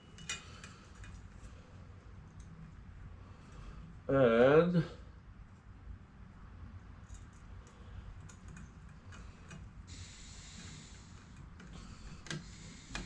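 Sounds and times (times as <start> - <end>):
small screws clicking and tapping: 0.1 - 1.2, 7.0 - 9.7.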